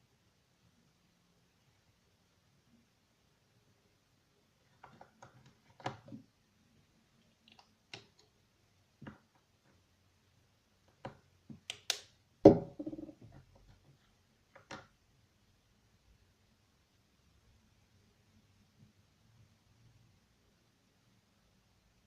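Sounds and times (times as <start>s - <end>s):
objects tapping on hard surface: 12.5s - 13.4s.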